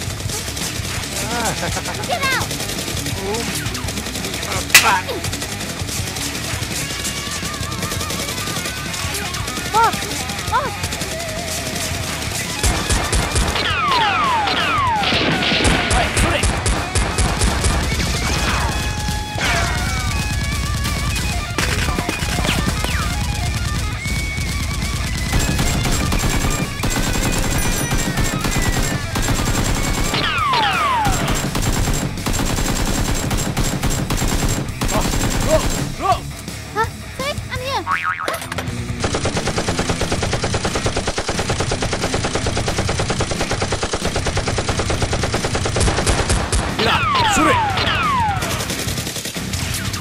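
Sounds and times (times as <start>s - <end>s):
machine gun bursts: 0.0s - 13.6s, 20.3s - 36.0s, 39.0s - 46.6s.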